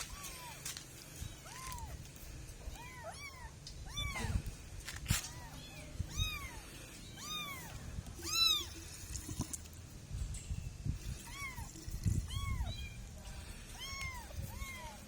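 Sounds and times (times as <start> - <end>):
kitten meowing: 2.7 - 4.5, 5.3 - 8.7, 12.2 - 13.0, 13.8 - 15.0.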